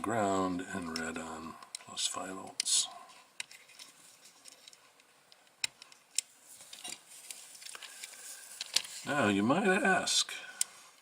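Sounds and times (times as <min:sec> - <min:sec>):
electronic parts clicking: 0:03.4 - 0:09.0.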